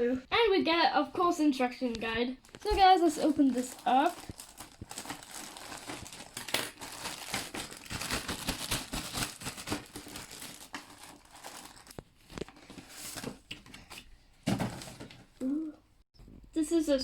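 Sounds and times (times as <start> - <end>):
packaging crinkling and tearing: 2.4 - 13.4.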